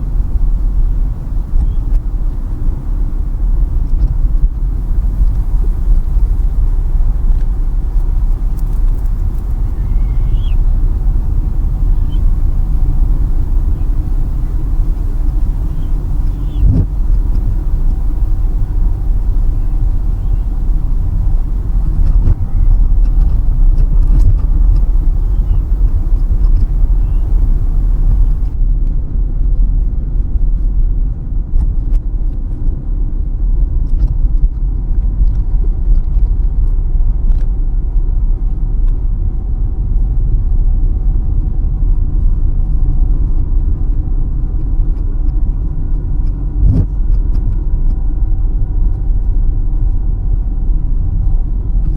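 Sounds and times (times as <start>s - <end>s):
light high hiss: 0.0s - 28.6s
car engine and tyres rumbling: 0.0s - 51.9s.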